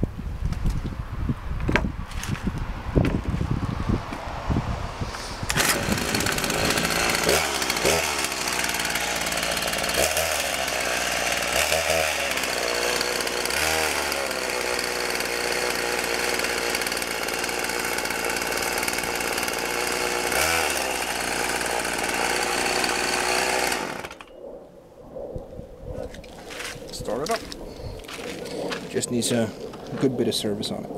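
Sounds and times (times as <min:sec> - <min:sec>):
chainsaw revving: 0:05.5 - 0:24.3.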